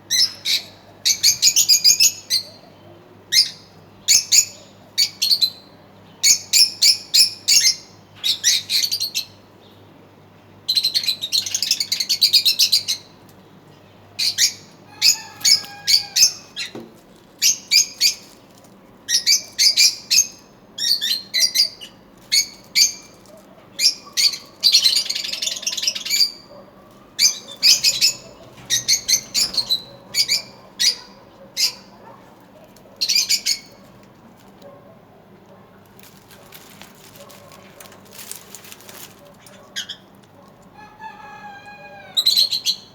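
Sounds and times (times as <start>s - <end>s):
lovebirds chirping: 10.7s - 34.8s.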